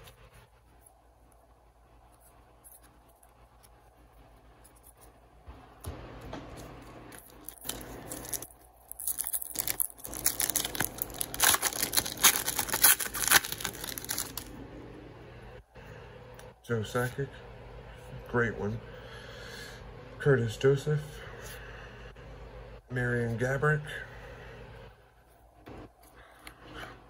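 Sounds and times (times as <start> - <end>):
card pack wrapper crackling: 6.6 - 14.5.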